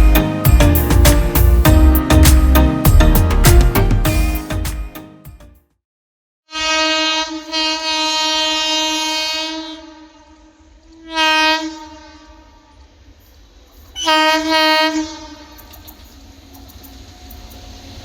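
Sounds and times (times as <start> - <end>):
train horn blasts: 6.5 - 12.9, 14.0 - 15.8.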